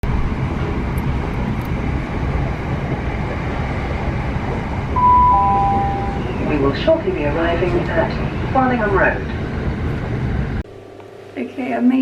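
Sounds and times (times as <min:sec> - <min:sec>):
train interior rumble: 0:00.0 - 0:10.6
two-note falling chime: 0:05.0 - 0:06.3.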